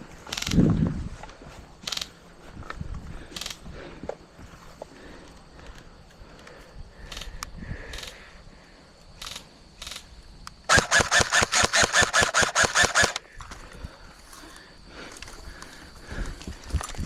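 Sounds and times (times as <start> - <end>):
airsoft gun full-auto burst: 10.7 - 13.2.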